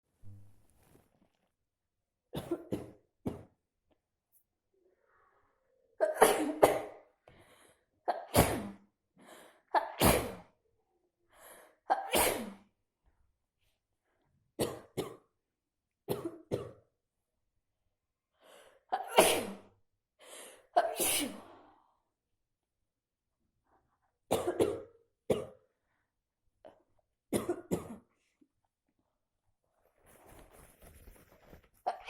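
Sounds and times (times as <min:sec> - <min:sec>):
faint breaths: 0:07.2 - 0:07.9
person sneezing: 0:20.8 - 0:21.5.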